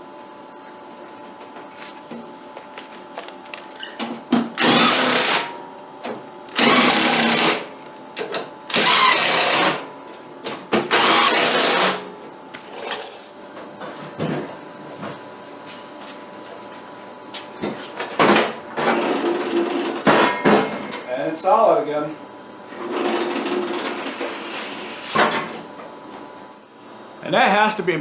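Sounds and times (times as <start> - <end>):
small power tool running: 4.6 - 5.5, 6.5 - 7.8, 8.7 - 9.8, 10.9 - 12.1.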